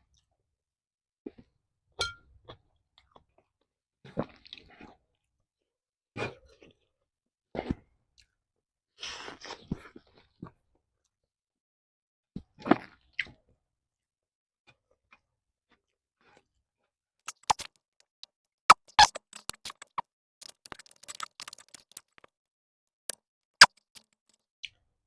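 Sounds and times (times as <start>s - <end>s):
mouth smacks and chewing: 17.3s - 17.7s, 18.7s - 22.3s.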